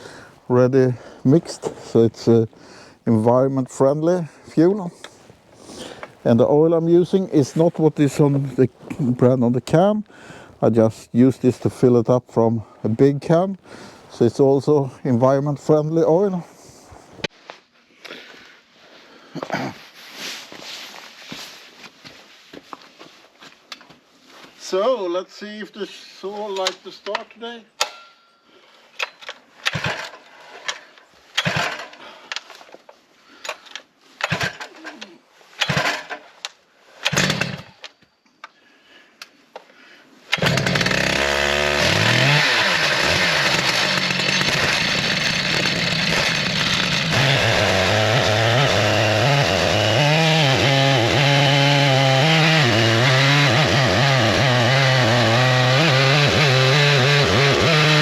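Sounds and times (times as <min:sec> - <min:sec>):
chainsaw pull cord: 0:29.6 - 0:32.5, 0:33.4 - 0:36.3, 0:37.0 - 0:37.8, 0:40.3 - 0:58.0
chainsaw engine running: 0:37.1 - 0:37.6, 0:40.3 - 0:58.0.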